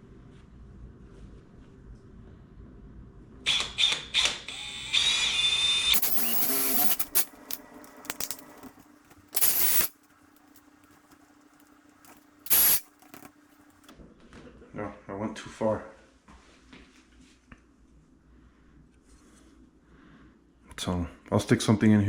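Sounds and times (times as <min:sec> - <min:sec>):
power drill boring with squeal: 0:03.5 - 0:07.4, 0:09.4 - 0:10.0, 0:12.5 - 0:12.9.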